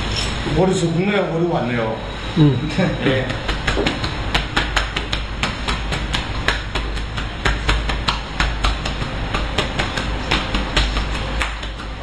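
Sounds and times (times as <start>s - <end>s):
sharp taps or slaps: 3.2s - 12.0s.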